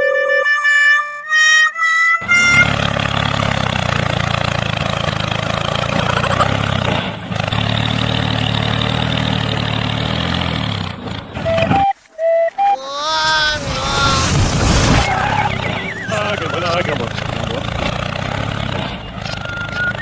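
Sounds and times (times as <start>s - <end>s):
engine-like running drone: 2.2s - 11.8s, 13.5s - 20.0s
short rising tune: 11.5s - 16.3s.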